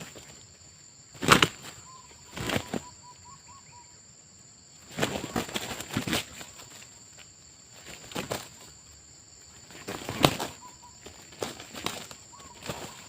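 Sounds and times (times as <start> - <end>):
high insect drone: 0.0 - 13.0
sharp thumps and rustles: 4.9 - 6.6, 9.7 - 13.0.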